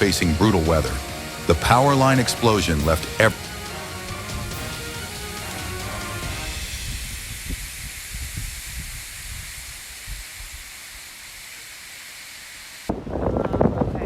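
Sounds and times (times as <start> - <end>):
storm rain hissing: 0.0 - 14.0
gusty wind rumbles: 3.1 - 10.7, 12.9 - 14.0.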